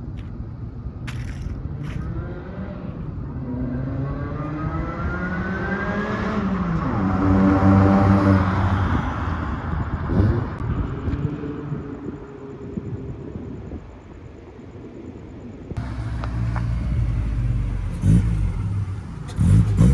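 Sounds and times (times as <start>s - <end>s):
car engine accelerating: 15.8s - 19.9s.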